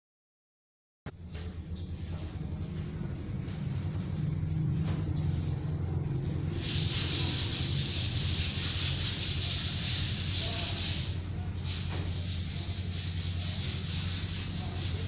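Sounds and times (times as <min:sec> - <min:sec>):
steady low hum: 0:01.1 - 0:15.0
hissing rasp: 0:06.5 - 0:15.0.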